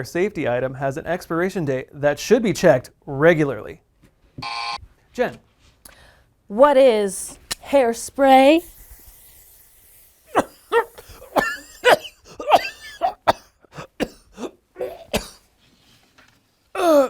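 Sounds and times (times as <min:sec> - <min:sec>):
person coughing: 0:10.3 - 0:15.5, 0:16.8 - 0:17.0.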